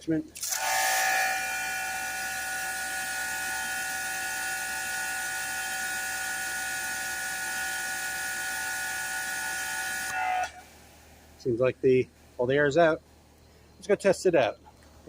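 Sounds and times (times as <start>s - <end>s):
pressure washer motor whine: 0.4s - 10.7s.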